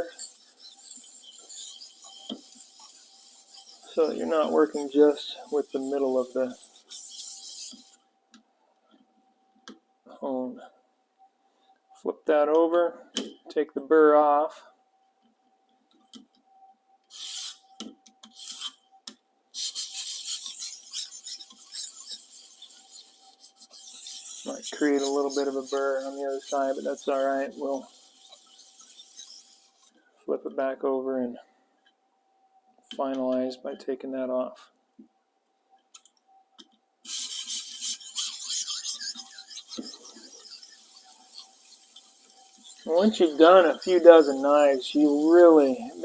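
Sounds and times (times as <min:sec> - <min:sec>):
sharpening stone scraping blade: 0:00.0 - 0:08.0, 0:19.6 - 0:30.0, 0:37.1 - 0:46.0.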